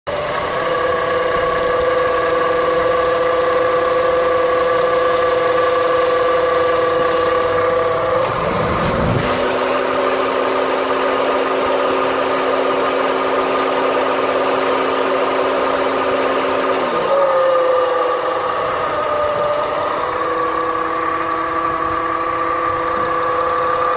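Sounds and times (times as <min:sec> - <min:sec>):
car engine idling: 0:00.1 - 0:23.9.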